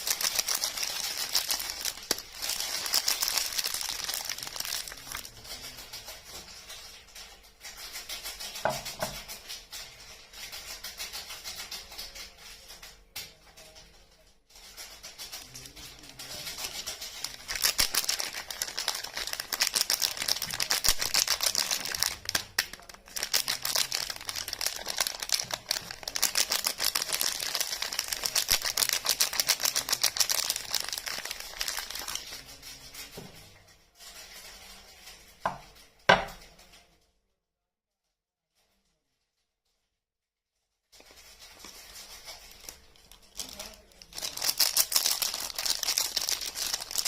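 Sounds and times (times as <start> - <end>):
packaging crinkling and tearing: 0.0 - 5.8, 15.4 - 32.6, 41.0 - 47.0.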